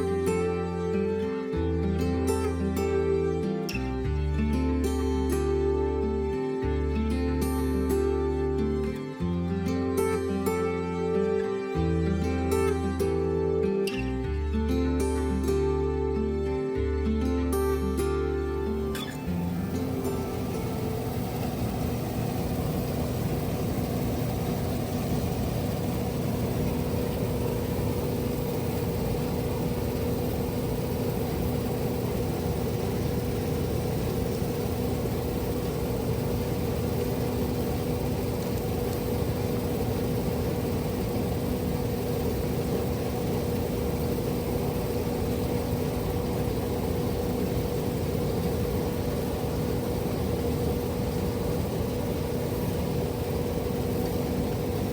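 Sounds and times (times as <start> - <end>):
farm machinery engine hum: 17.8 - 54.9.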